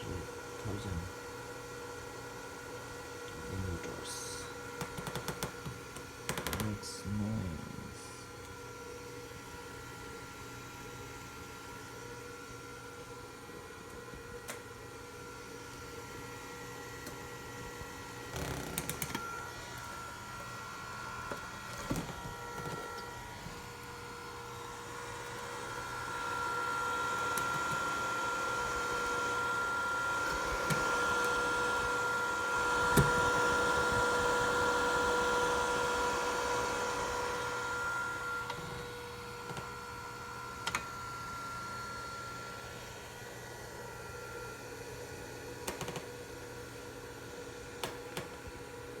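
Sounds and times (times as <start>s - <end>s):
power inverter humming whine: 11.8s - 42.9s.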